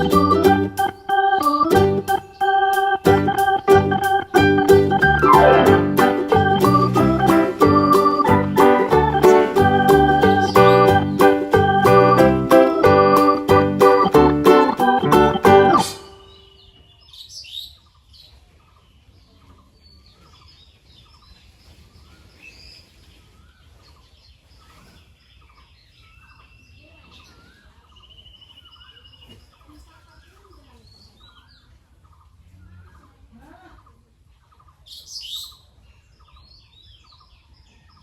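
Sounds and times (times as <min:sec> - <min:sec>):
background music: 0:00.0 - 0:16.4
bird trill: 0:00.0 - 0:17.8
small birds chirping: 0:00.0 - 0:38.0.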